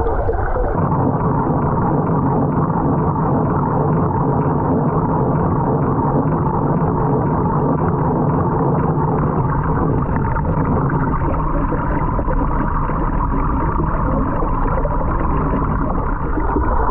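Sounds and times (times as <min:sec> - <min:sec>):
water churning and gurgling: 0:00.0 - 0:16.9.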